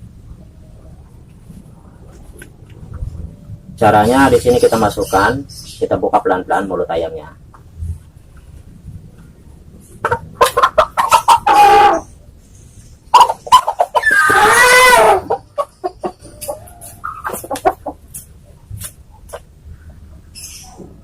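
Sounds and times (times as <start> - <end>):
chicken squawking: 9.9 - 12.2, 13.1 - 18.2
chicken clucking: 9.9 - 21.0.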